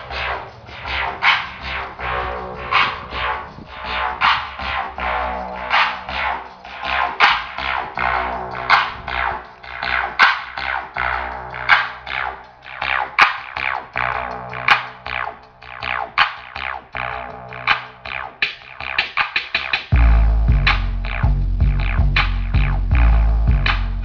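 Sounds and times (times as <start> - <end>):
electronic dance music: 0.0 - 19.9.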